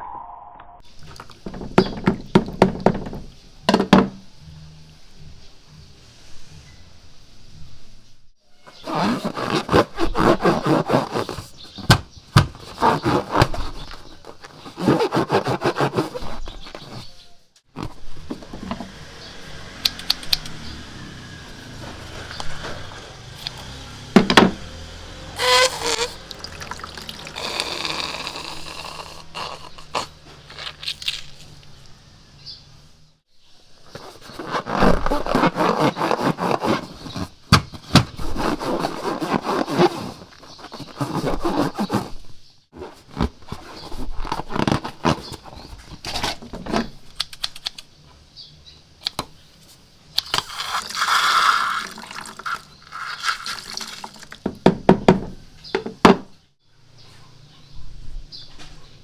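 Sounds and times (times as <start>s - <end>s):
slime pouring and squelching: 25.4s - 31.5s, 50.3s - 54.5s.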